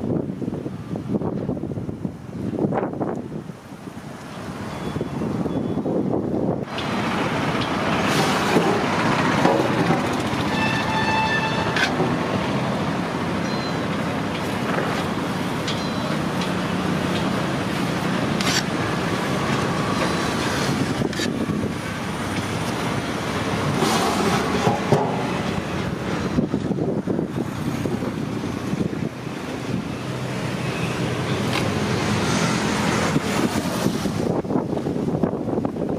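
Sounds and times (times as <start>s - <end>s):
road traffic passing: 0.0s - 35.9s
vehicle horn: 10.5s - 12.0s.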